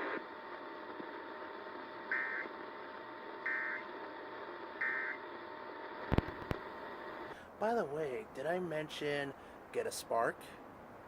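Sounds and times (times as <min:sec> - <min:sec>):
buzzy digital chirps: 0:02.1 - 0:02.5, 0:03.5 - 0:03.9, 0:04.8 - 0:05.2
faint steady hiss: 0:06.0 - 0:11.0.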